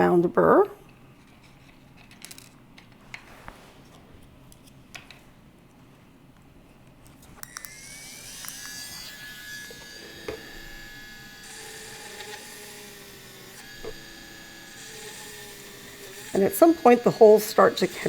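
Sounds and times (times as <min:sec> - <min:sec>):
rotary tool high whine: 0:07.4 - 0:18.0.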